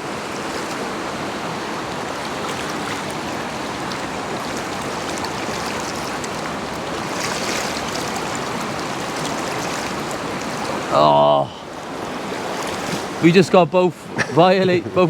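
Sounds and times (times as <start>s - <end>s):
stream water rushing over rocks: 0.0s - 15.0s.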